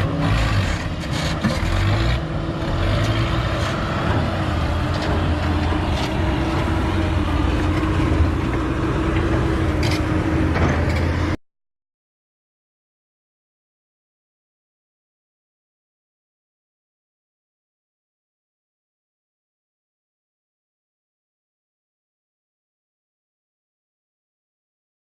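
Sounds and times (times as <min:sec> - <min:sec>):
heavy diesel engines running: 0:00.0 - 0:11.4.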